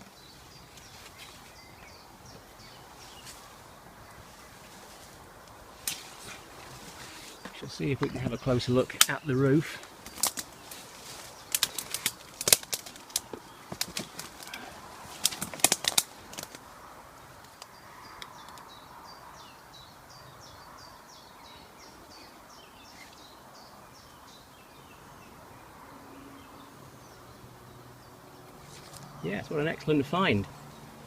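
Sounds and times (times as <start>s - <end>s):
footsteps on twigs and dry leaves: 0.2s - 16.6s.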